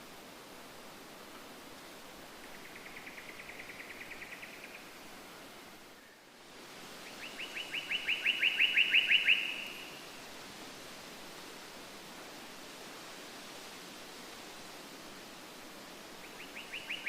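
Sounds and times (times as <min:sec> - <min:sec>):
steady background hiss: 0:00.0 - 0:17.0
songbird trilling: 0:07.2 - 0:09.9.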